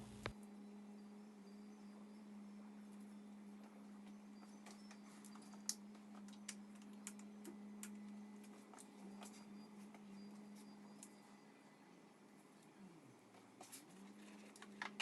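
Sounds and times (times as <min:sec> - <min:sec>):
steady low hum: 0:00.0 - 0:15.0
faint irregular clicks: 0:04.4 - 0:11.2.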